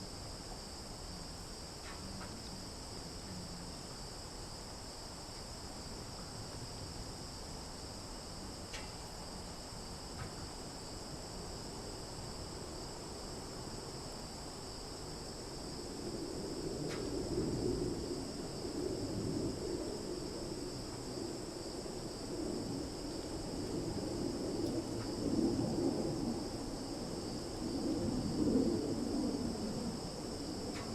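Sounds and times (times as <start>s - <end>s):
crickets and cicadas shrilling: 0.0s - 30.9s.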